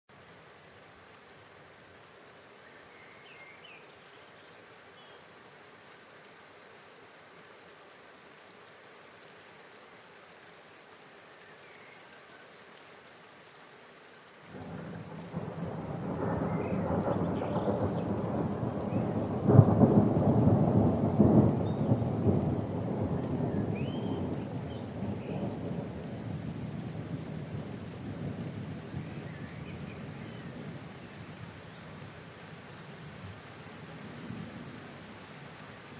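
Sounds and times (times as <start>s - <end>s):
steady rain falling: 0.1s - 35.9s
rolling thunder with sharp crack: 14.6s - 25.8s.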